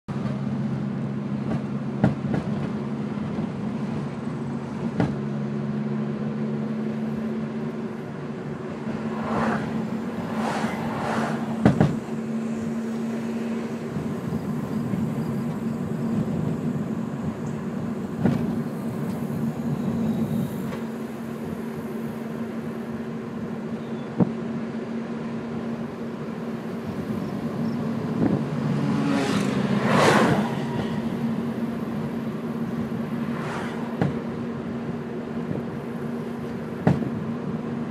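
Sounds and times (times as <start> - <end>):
car engine drone: 0.1 - 37.9
suspension clunks: 11.3 - 21.7, 33.8 - 34.5.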